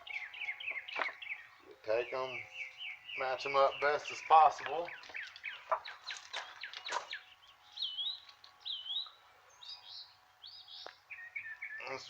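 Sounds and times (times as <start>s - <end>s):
songbirds chirping: 0.0s - 12.0s
bird whistled notes: 4.9s - 12.0s.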